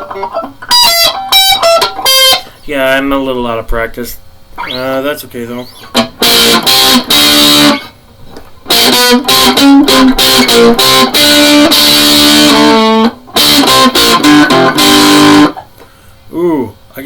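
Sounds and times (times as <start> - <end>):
distorted electric guitar riffs: 0.0 - 2.6, 4.6 - 8.0, 8.6 - 15.7.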